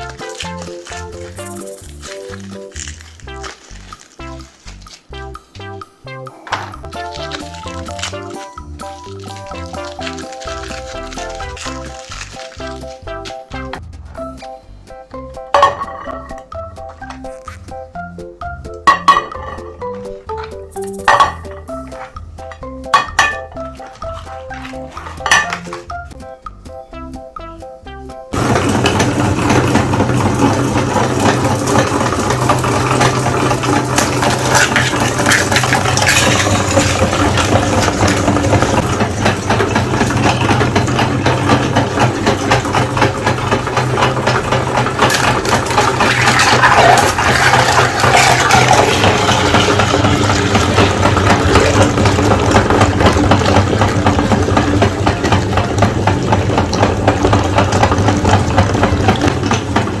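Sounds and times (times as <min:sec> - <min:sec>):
meat grinder motor humming: 0:00.0 - 0:04.1, 0:06.8 - 0:13.2, 0:28.4 - 1:00.0
crackling and crunching: 0:00.0 - 0:05.4, 0:06.6 - 0:14.4, 0:15.6 - 0:17.9, 0:18.8 - 0:25.9, 0:28.3 - 1:00.0.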